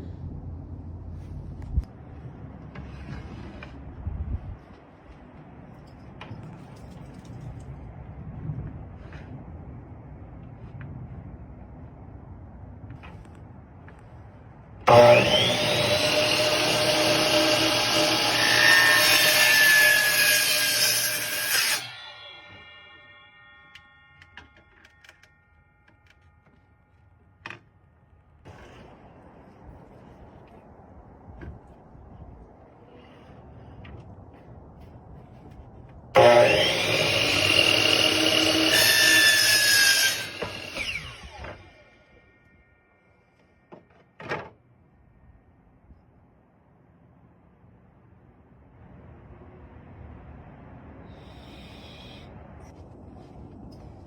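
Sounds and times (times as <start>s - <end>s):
electric miter saw motor whine: 14.9s - 26.6s, 36.2s - 43.8s.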